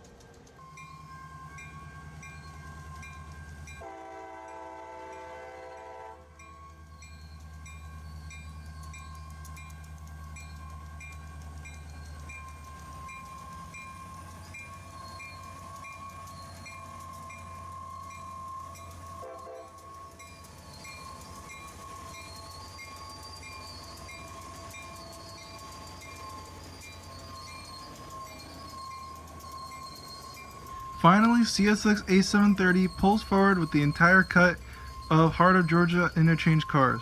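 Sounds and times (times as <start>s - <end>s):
diesel locomotive engine rumble: 0.0s - 37.0s
locomotive horn chord: 3.8s - 6.4s, 19.2s - 19.8s.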